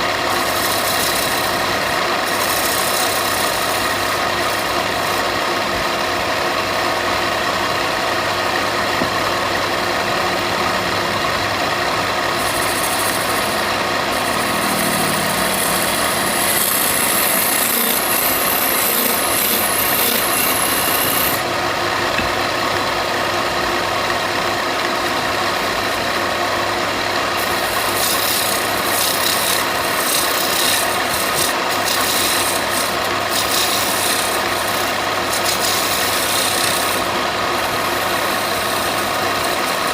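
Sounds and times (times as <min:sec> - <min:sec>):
power tool motor hum: 0:00.0 - 0:22.5, 0:27.0 - 0:39.9.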